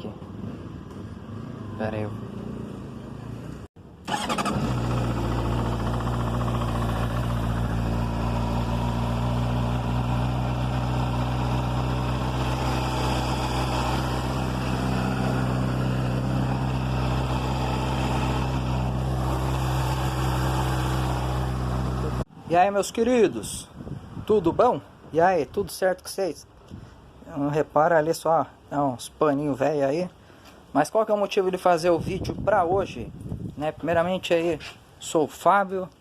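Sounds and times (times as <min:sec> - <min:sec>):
motorcycle engine idling: 0:04.1 - 0:22.2.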